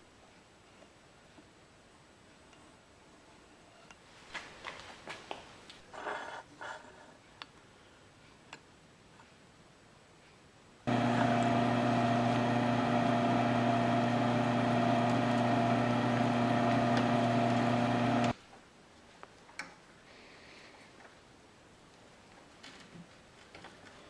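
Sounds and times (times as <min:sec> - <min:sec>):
machine tool motor running: 0:10.9 - 0:18.4.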